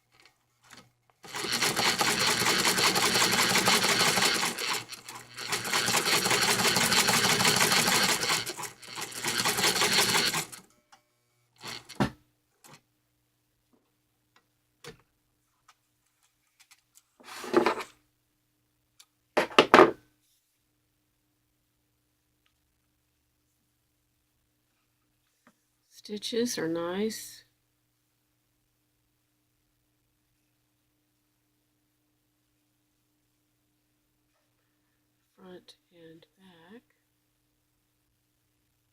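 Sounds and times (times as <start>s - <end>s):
sewing machine stitching: 0.7s - 10.6s, 11.6s - 12.1s.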